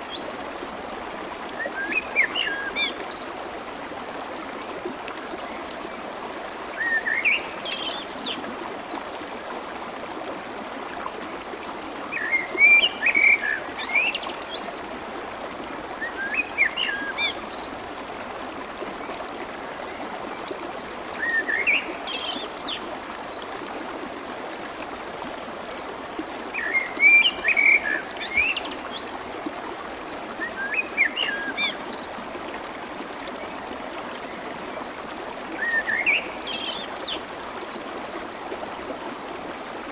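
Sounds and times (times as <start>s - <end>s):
flowing stream: 0.0s - 39.9s.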